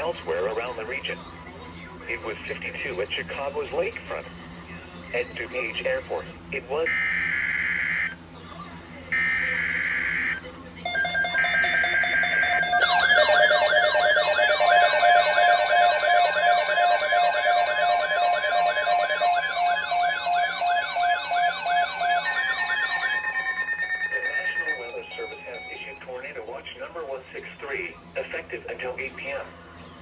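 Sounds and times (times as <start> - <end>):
steady pulsing beep: 9.1 - 26.2
screeching digital data bursts: 9.2 - 26.0
sweeping electronic alert tone: 9.2 - 26.0.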